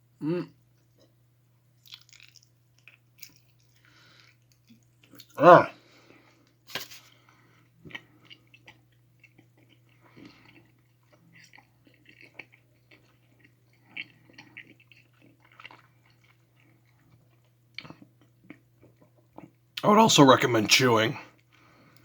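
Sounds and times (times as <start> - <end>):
person chewing gummy candy: 1.8 - 5.5, 7.7 - 19.8.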